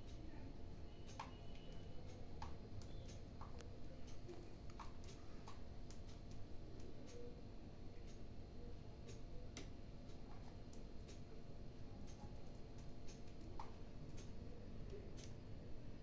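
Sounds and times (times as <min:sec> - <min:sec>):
cockatiel beak clicks: 0:12.1 - 0:15.4.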